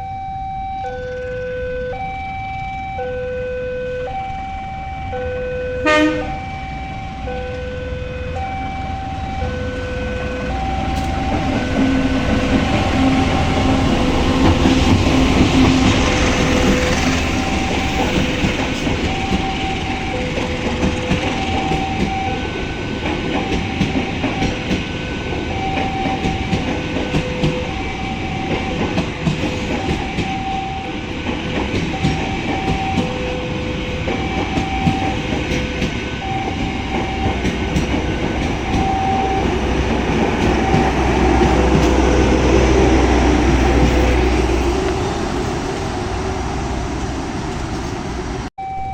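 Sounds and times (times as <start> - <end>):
two-note crossing warning chime: 0.0 - 14.1, 17.3 - 31.1, 31.9 - 41.8, 48.6 - 48.9
train wheels clattering over rails: 10.4 - 48.1.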